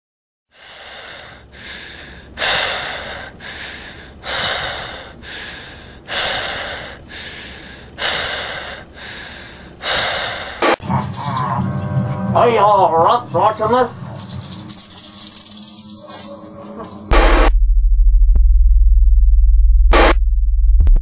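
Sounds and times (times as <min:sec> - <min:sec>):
heavy rasping breathing: 0:00.5 - 0:11.0.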